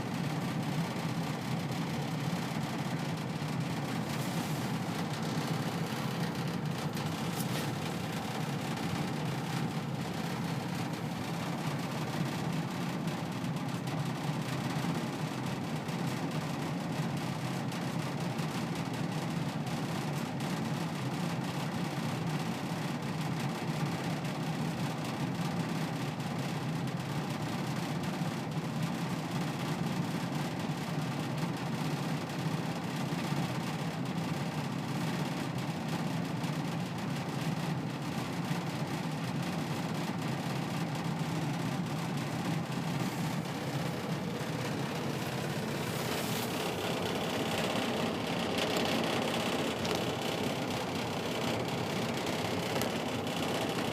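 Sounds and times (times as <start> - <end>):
furnace running with low hum: 0.0 - 53.9.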